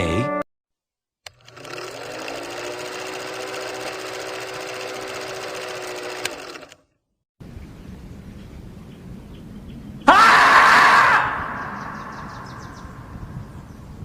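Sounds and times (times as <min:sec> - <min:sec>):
small machine rattling and humming: 0:01.3 - 0:07.0.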